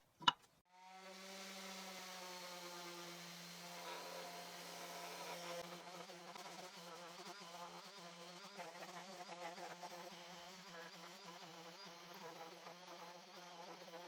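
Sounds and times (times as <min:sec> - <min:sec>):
electric sander buzzing: 0:00.7 - 0:08.4.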